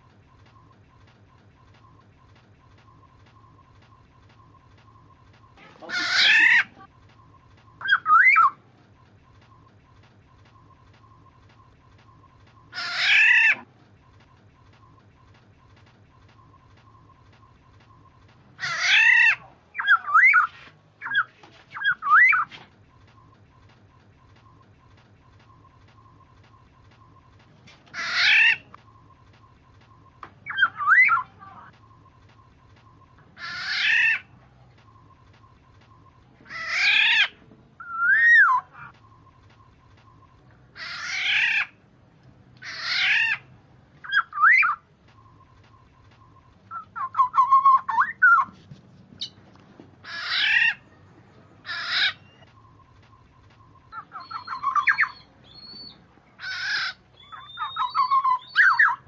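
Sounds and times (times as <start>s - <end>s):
harsh nasal bird calls: 1.7s - 8.6s, 9.2s - 41.8s, 42.6s - 48.6s, 50.0s - 59.0s
bird harsh rasping call: 5.7s - 6.8s, 12.7s - 13.7s, 18.6s - 22.4s, 27.9s - 28.7s, 33.4s - 34.3s, 40.7s - 41.8s, 42.6s - 44.8s, 50.0s - 50.8s, 51.6s - 52.4s, 53.9s - 59.0s
bird fluty whistled phrases: 7.7s - 8.6s, 18.9s - 22.5s, 30.4s - 31.7s, 37.8s - 38.9s, 44.0s - 44.8s, 46.7s - 48.5s, 53.9s - 56.0s, 57.2s - 59.0s.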